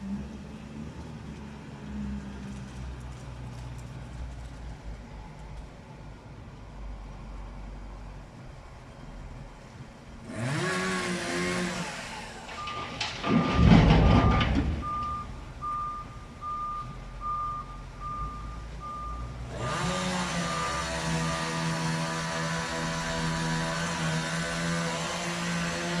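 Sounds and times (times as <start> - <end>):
diesel engine revving: 10.1 - 26.0
truck reverse alarm beeping: 12.5 - 19.4, 20.3 - 21.6.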